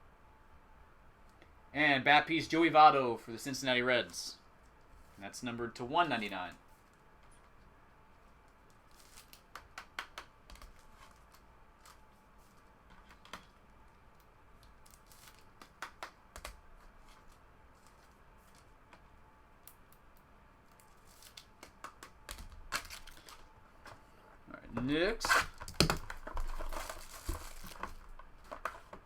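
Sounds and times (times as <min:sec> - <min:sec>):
trading cards and packaging rustling: 0:08.5 - 0:19.0, 0:20.6 - 0:24.0, 0:24.8 - 0:29.0.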